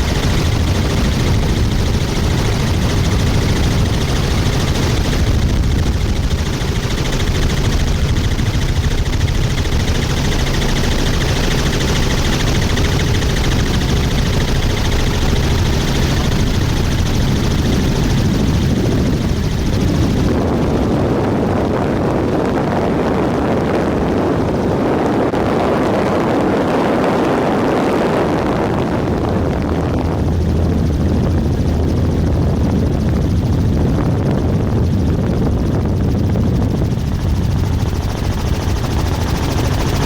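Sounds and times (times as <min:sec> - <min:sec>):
helicopter rotor and engine drone: 0:00.0 - 0:40.0.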